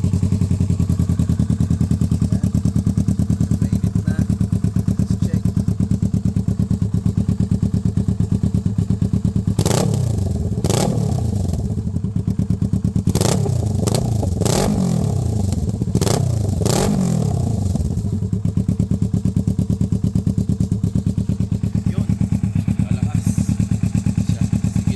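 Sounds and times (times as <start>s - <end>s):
motorcycle engine idling and revving: 0.0s - 24.9s.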